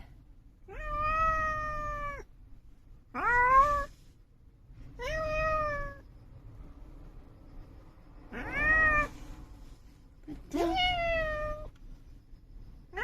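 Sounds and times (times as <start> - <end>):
cat meowing: 0.6 - 2.3, 3.1 - 4.0, 4.9 - 6.1, 8.3 - 9.2, 10.6 - 11.8.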